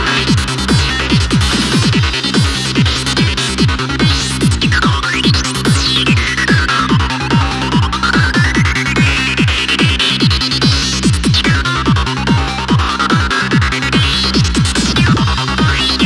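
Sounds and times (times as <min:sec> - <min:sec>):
kick drum beat: 0:00.0 - 0:16.0
pulsing bassline: 0:00.0 - 0:16.0
synth lead sweeping up and down: 0:13.9 - 0:16.0.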